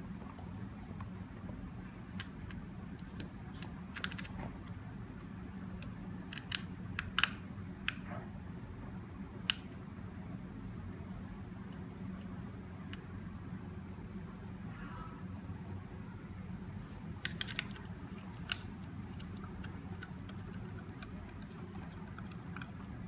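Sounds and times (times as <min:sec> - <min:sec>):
small screws clicking and tapping: 0:05.8 - 0:08.0, 0:17.2 - 0:23.0.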